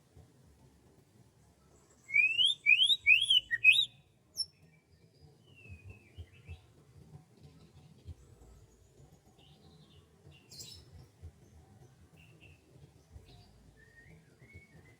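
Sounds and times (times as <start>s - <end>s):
songbird whistling notes: 2.0s - 4.5s, 13.8s - 14.9s.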